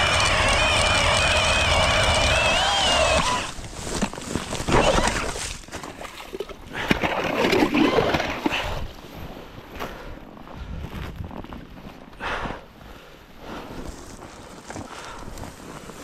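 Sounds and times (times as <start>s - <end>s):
ice auger motor whining: 0.0s - 5.6s
ice scraping and sloshing: 3.5s - 9.4s.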